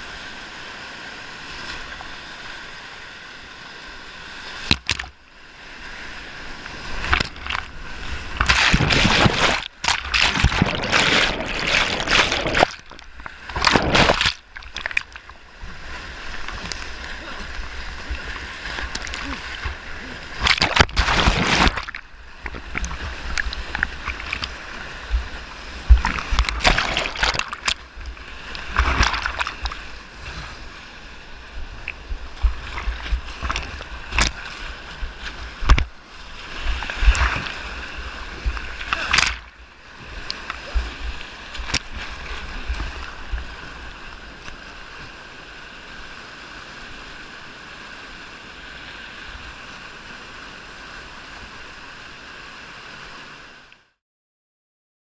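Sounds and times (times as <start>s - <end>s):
rushing river water: 0.0s - 54.0s
loud splashes and knocks: 7.0s - 7.7s, 8.4s - 15.2s, 20.4s - 24.5s, 25.1s - 27.8s, 28.6s - 29.8s, 32.4s - 35.9s, 38.4s - 39.5s.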